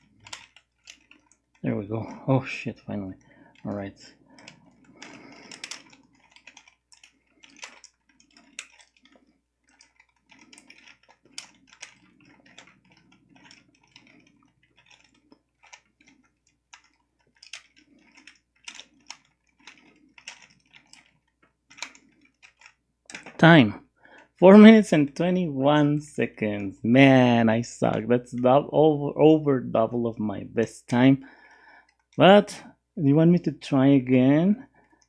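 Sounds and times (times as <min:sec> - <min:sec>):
puzzle cube clicking and rattling: 0:00.0 - 0:23.6.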